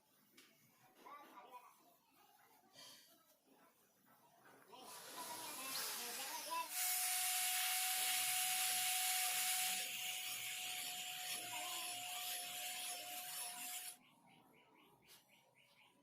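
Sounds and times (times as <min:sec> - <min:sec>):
rasping scrub on metal: 0:09.2 - 0:14.0.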